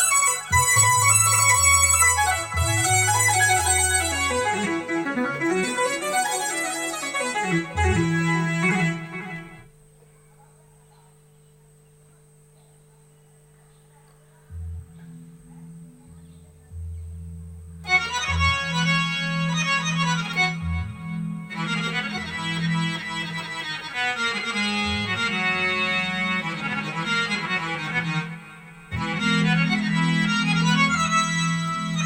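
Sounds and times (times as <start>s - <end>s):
repeating low beat: 0.0s - 9.6s, 14.5s - 23.6s
synthesizer reed tone melody: 0.0s - 9.7s, 14.5s - 32.0s.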